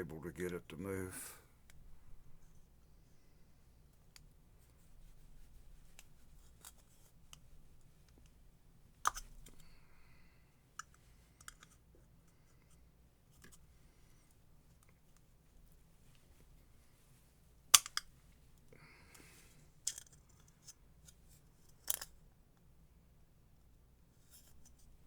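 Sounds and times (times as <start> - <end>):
pick clicking and scraping plastic: 9.0 - 9.6, 10.8 - 11.8.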